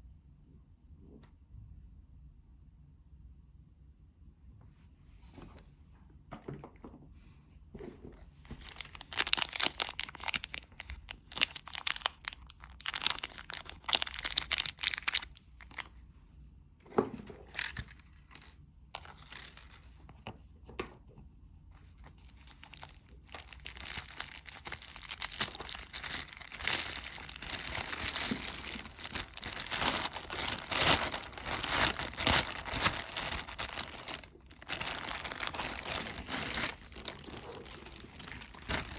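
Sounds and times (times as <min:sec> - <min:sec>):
packaging crinkling and rustling: 0:07.8 - 0:16.0, 0:16.9 - 0:20.3, 0:21.8 - 0:38.9.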